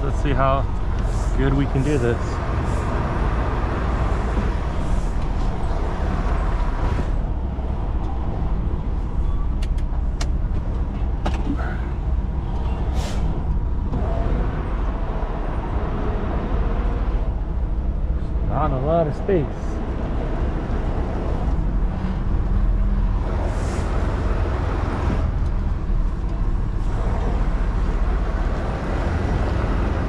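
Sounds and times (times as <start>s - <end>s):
diesel truck engine running: 0.0s - 30.0s
short air hiss: 13.0s - 13.3s.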